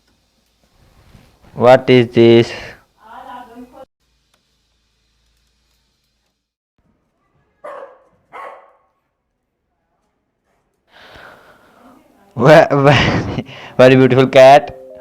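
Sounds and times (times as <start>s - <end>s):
dog barking: 7.6s - 9.0s.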